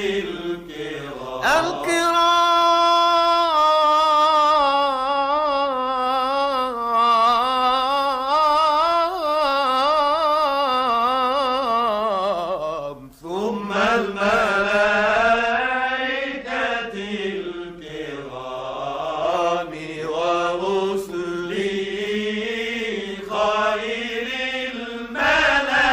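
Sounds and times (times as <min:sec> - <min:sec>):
man chanting melisma: 0:01.2 - 0:14.9.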